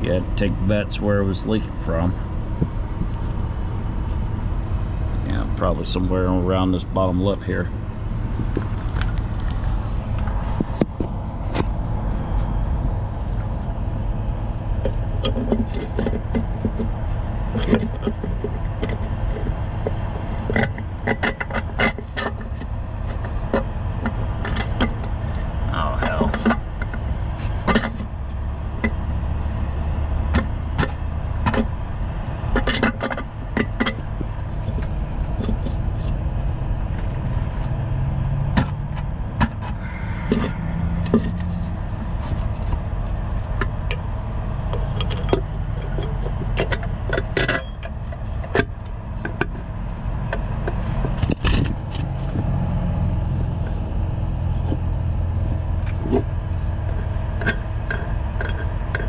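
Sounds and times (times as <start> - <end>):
low engine drone: 0.0 - 59.0
metal parts clicking and scraping: 14.9 - 28.2, 44.7 - 49.6, 55.8 - 59.0.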